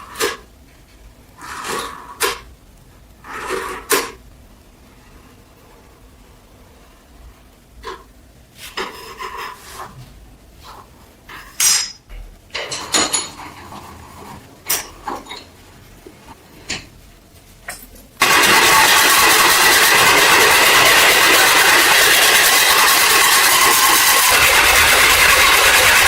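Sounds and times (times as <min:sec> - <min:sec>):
parts being handled: 0:07.8 - 0:18.2
loud steady machine noise: 0:18.2 - 0:26.0.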